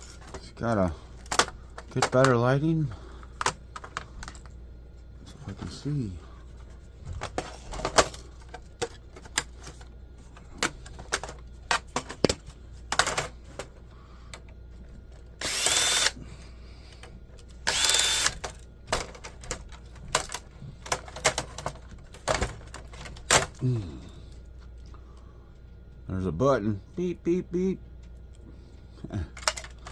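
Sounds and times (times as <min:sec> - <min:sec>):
plastic parts and tools clicking: 0:01.2 - 0:02.4, 0:07.1 - 0:16.2, 0:16.9 - 0:23.6, 0:29.3 - 0:29.9
cordless drill running: 0:15.4 - 0:16.2, 0:17.6 - 0:18.4.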